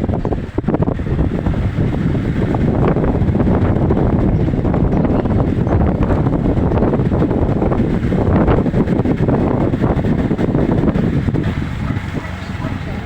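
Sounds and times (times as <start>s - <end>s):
wind buffeting microphone: 0.0s - 13.0s
sea surf: 6.0s - 13.0s.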